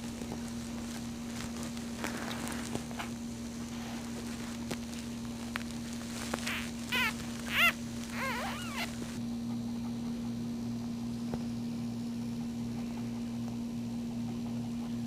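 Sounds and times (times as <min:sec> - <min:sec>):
steady low hum: 0:00.0 - 0:15.0
puppy squeaking: 0:06.2 - 0:09.2.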